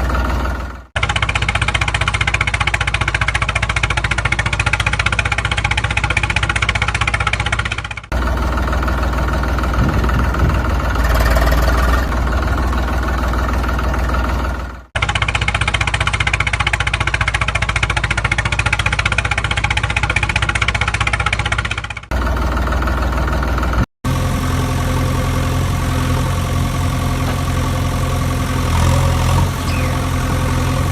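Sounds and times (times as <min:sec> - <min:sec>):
engine idling with fast chug: 0:00.0 - 0:30.9.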